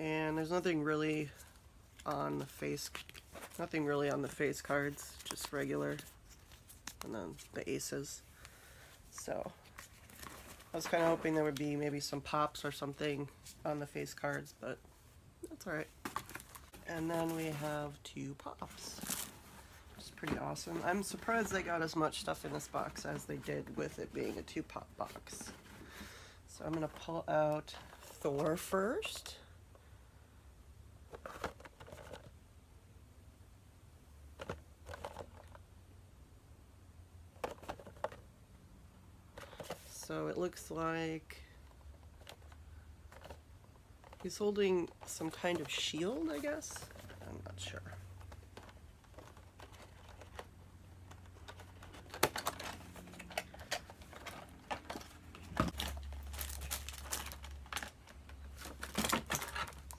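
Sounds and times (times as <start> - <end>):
plastic and cardboard handling: 1.2 - 14.8, 15.4 - 29.3, 31.0 - 32.4, 34.3 - 35.6, 37.3 - 38.3, 39.3 - 40.8, 41.4 - 59.9
cardboard box clicks and rustles: 18.7 - 19.4, 51.3 - 59.9.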